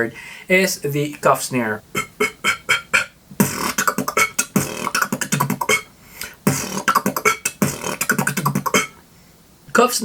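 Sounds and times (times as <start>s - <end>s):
beatboxing: 1.9s - 9.0s.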